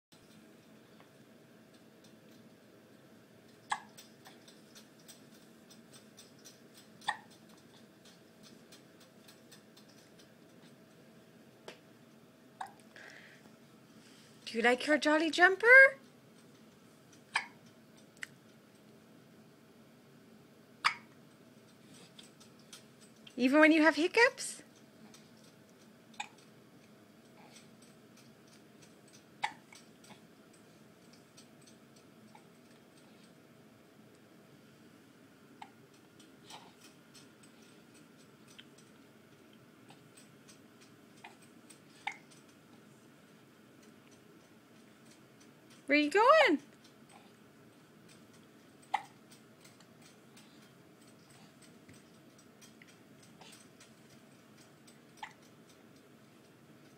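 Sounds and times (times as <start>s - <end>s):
faint clicking: 0.1s - 11.0s, 35.6s - 45.9s, 46.6s - 56.9s
baby hiccup: 17.3s - 17.6s, 20.8s - 21.1s, 48.9s - 49.2s.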